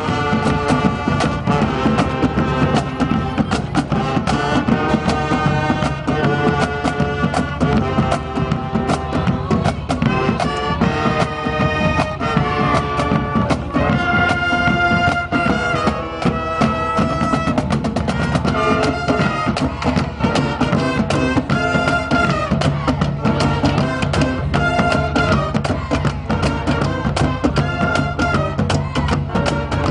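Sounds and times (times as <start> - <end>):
brass horns playing: 0.0 - 29.9
steady drum beat: 0.0 - 29.9.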